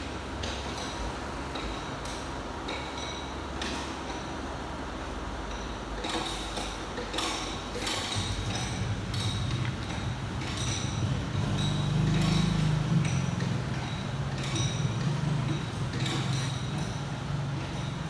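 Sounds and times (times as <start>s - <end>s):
metallic clinks and knocks: 7.1s - 17.1s
low engine-like rumble: 8.1s - 18.0s.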